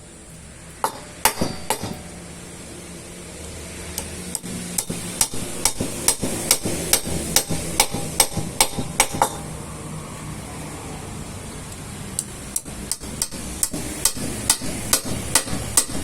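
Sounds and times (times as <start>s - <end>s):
sharp ringing knocks: 0.8s - 2.1s, 4.8s - 9.5s.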